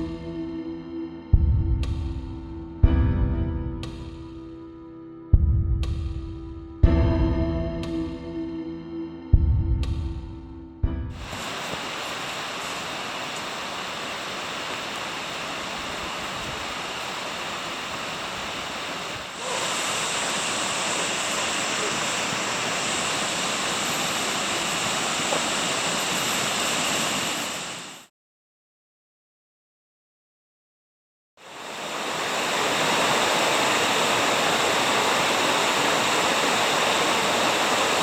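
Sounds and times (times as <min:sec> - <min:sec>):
rush of falling water: 0:11.2 - 0:28.1, 0:31.4 - 0:38.0.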